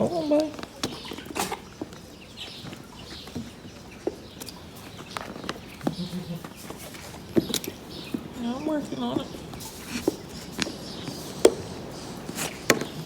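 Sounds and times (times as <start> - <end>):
low animal call: 5.8 - 7.0.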